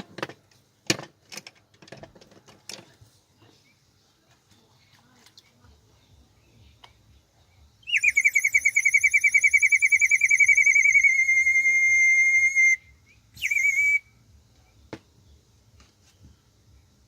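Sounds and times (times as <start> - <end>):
water whistle warbling trill: 7.9 - 12.8, 13.4 - 14.0.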